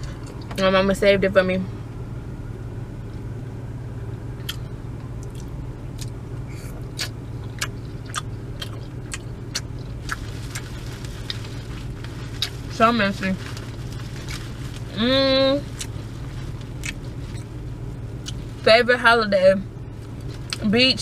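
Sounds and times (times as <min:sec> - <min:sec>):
low engine hum: 0:00.0 - 0:21.0
close-up chewing and smacking: 0:06.9 - 0:11.5, 0:16.7 - 0:17.5.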